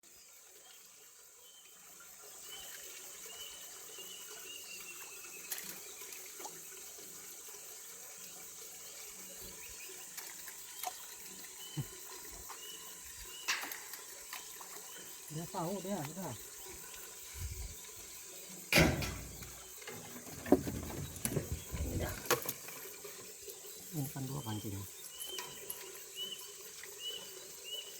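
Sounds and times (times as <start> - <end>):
steady hiss: 15.3 - 24.4.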